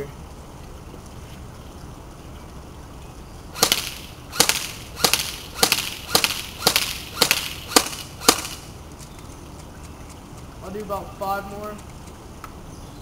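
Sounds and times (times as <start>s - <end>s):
airsoft gun single shots: 3.6s - 8.7s.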